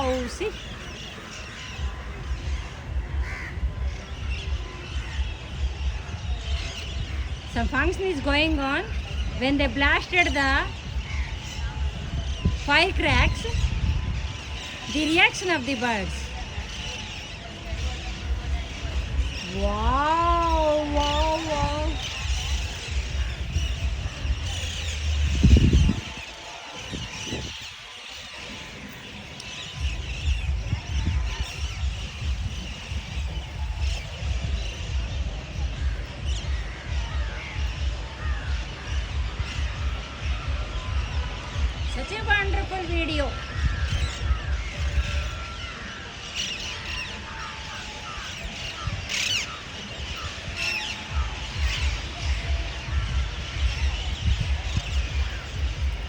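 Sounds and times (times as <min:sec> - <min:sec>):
low rumbling noise: 0:00.0 - 0:27.6
parrots and crows squawking: 0:00.0 - 0:56.0
wind buffeting microphone: 0:00.0 - 0:56.0.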